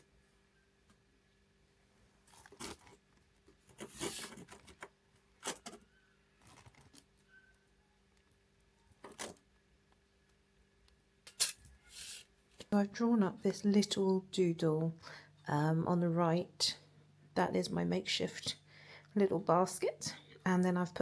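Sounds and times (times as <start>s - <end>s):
rustling and scraping of handled things: 2.2s - 9.5s, 11.3s - 12.8s.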